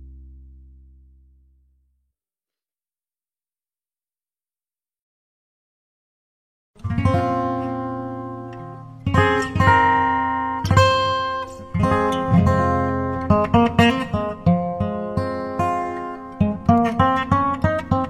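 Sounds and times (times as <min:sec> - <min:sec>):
acoustic guitar music: 0:00.0 - 0:01.5, 0:06.8 - 0:18.0.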